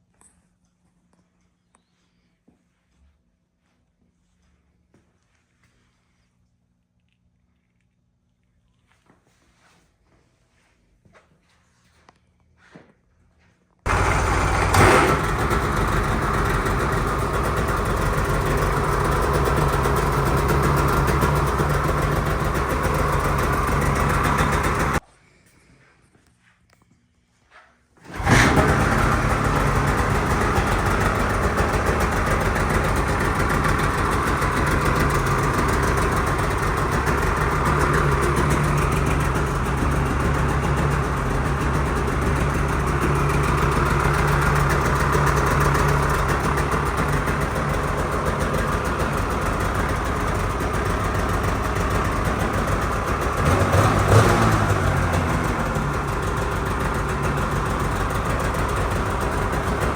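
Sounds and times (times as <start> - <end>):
snowmobile engine idling: 13.9 - 25.0, 28.0 - 59.9.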